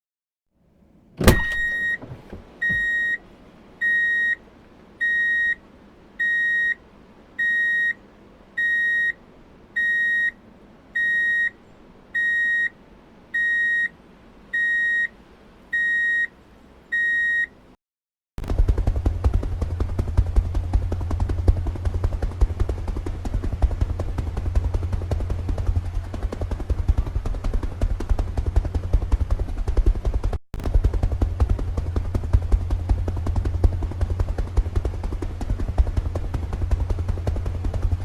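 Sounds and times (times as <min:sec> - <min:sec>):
low rumbling: 0:18.4 - 0:38.0.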